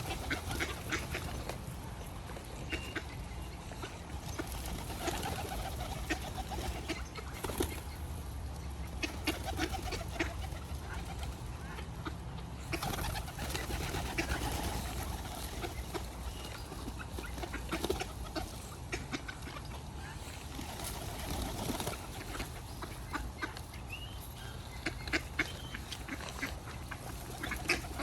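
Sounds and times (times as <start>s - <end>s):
pigeons cooing: 0.0s - 1.6s, 4.2s - 7.9s, 9.0s - 18.8s.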